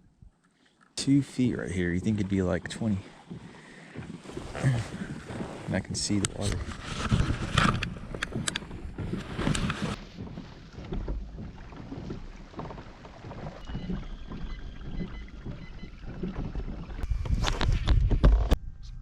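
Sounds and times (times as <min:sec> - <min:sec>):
water splashing against hull: 0:00.4 - 0:18.4
wind on microphone: 0:15.0 - 0:19.0.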